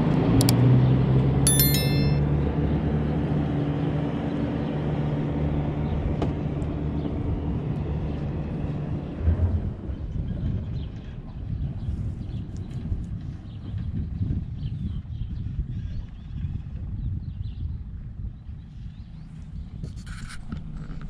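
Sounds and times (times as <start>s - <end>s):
short high-pitched tone: 1.5s - 2.2s.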